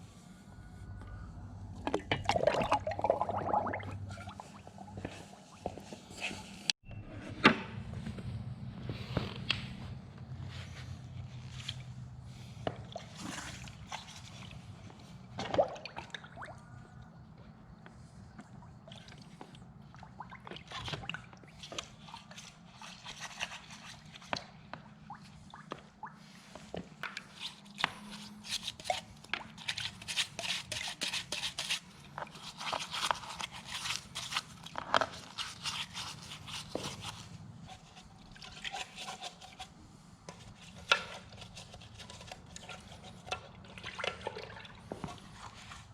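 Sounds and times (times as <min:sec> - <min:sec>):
brush scrubbing and scraping: 0:01.8 - 0:06.8, 0:08.9 - 0:15.4, 0:20.4 - 0:45.9
water dripping and splashing: 0:24.8 - 0:26.3.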